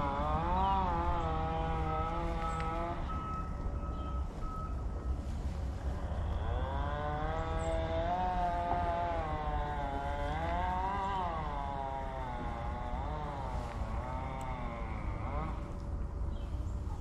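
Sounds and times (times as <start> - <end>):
motor engine droning: 0.0 - 17.0
steady low rumble: 0.0 - 17.0.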